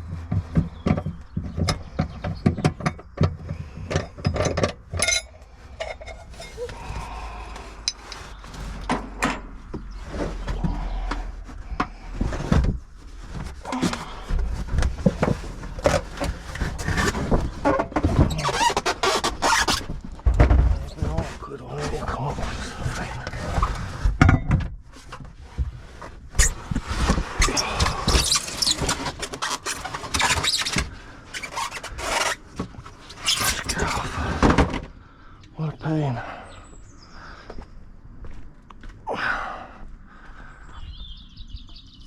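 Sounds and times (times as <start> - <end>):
hand tools clattering on car parts: 0.7 - 6.8
squeaks: 15.8 - 20.0, 27.4 - 34.4.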